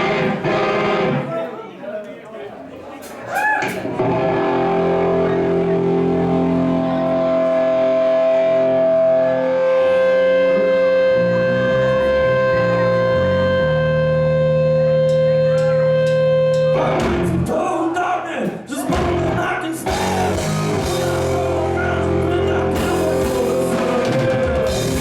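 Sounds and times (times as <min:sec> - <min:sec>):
guitar sustained notes: 0:00.0 - 0:01.3, 0:04.0 - 0:17.5, 0:19.0 - 0:25.0
full band playing: 0:00.0 - 0:01.7, 0:03.0 - 0:25.0
low bass line: 0:04.0 - 0:17.5, 0:18.9 - 0:25.0.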